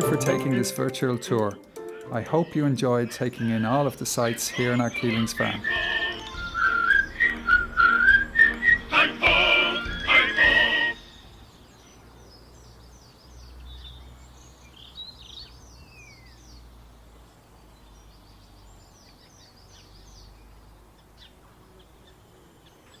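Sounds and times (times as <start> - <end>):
whistled tune: 0.0 - 2.6, 4.6 - 11.1
birds chirping: 0.0 - 16.7.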